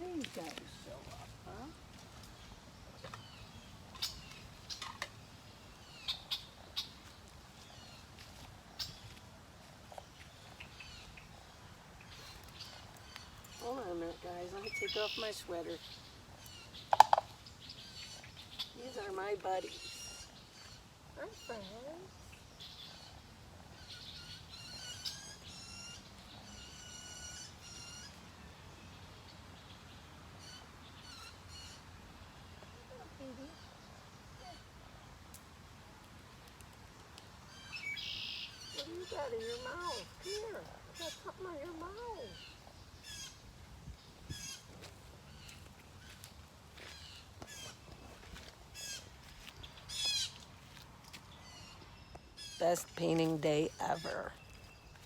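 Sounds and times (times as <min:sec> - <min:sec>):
cranes calling: 0:13.2 - 0:15.9.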